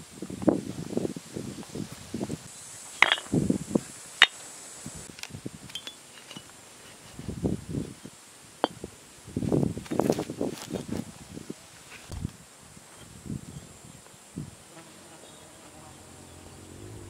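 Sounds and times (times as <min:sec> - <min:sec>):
hard objects knocking and clinking: 0:03.0 - 0:03.3.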